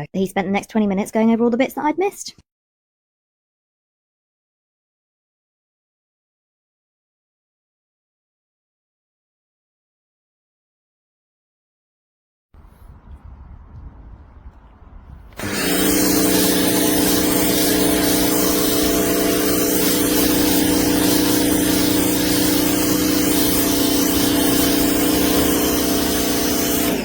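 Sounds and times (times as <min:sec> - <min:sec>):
pressure washer motor hum: 0:15.3 - 0:27.0
high-pressure water jet hissing: 0:15.4 - 0:27.0.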